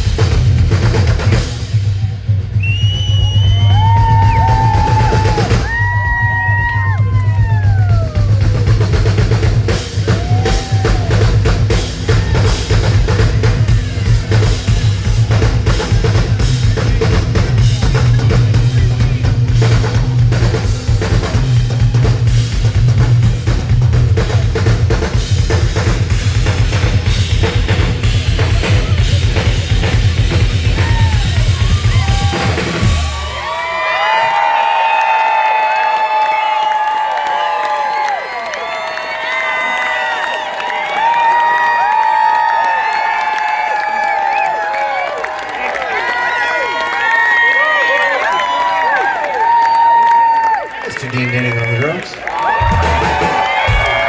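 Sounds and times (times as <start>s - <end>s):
live rock band playing: 0.0s - 33.6s, 52.4s - 54.0s
drum kit beat: 0.0s - 33.8s, 52.4s - 54.0s
crowd cheering and whistling: 0.9s - 22.8s, 26.7s - 54.0s.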